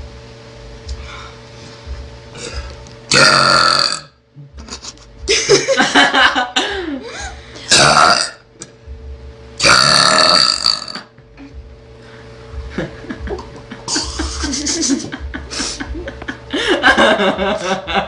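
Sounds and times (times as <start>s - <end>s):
woman burping loudly: 3.1s - 4.2s, 7.7s - 8.4s, 9.6s - 11.2s.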